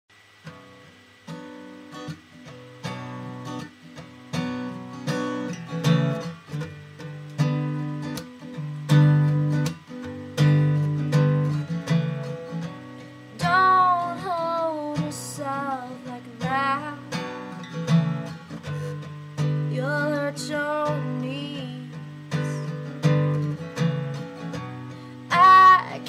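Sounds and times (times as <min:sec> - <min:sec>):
acoustic guitar strumming chords: 0:00.2 - 0:26.0
woman singing: 0:13.4 - 0:17.2, 0:19.7 - 0:22.8, 0:25.3 - 0:26.0.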